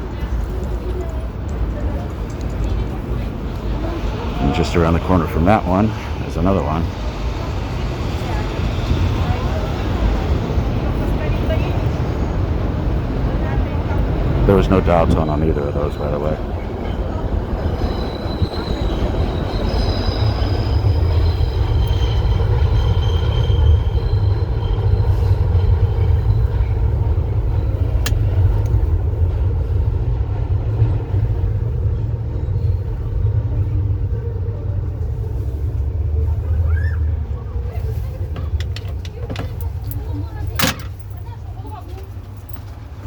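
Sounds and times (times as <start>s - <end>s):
subway train rumbling past: 0.0s - 43.0s
steel wheel squeal: 17.6s - 26.9s.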